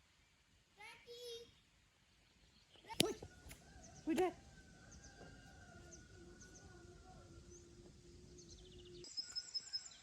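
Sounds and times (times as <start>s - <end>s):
faint high bird chirps: 8.4s - 10.0s.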